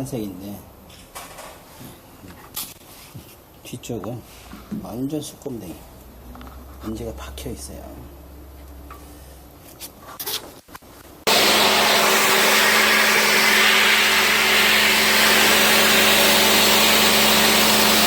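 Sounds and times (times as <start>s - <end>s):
cleaning machine humming and hissing: 11.3s - 18.0s.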